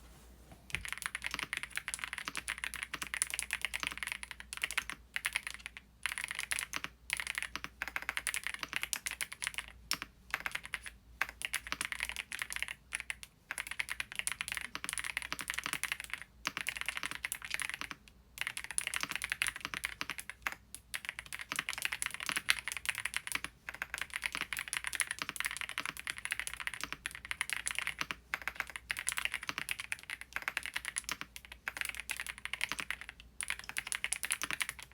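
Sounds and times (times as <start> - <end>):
typing on mechanical keyboard: 0.7 - 34.9.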